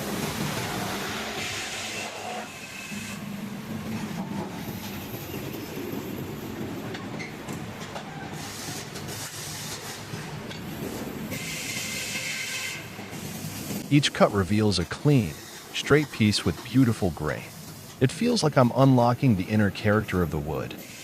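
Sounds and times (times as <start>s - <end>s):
table saw cutting wood: 0.8s - 3.3s.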